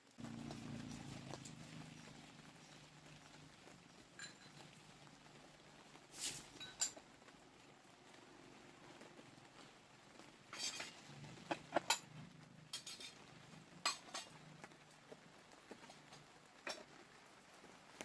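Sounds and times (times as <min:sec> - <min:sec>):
dishes and utensils clinking: 0:04.1 - 0:05.0, 0:06.2 - 0:07.0, 0:10.5 - 0:14.4.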